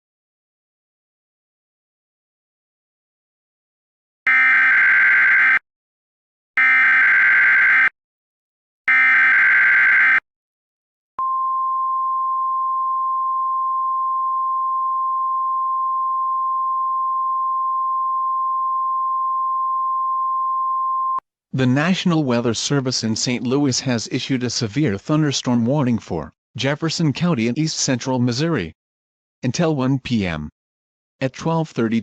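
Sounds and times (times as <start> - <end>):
long steady high alarm tone: 4.3 - 5.6, 6.6 - 8.0, 8.9 - 10.2.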